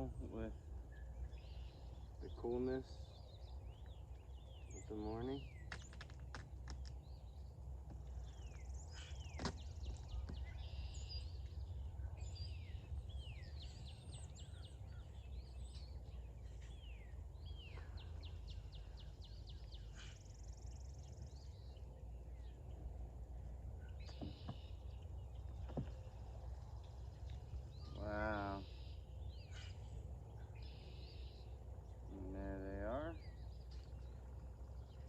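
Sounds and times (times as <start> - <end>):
songbirds singing and chirping: 0.0 - 35.0
steady low rumble: 0.0 - 35.0
bird trill: 8.2 - 22.7, 23.8 - 26.0, 26.8 - 35.0.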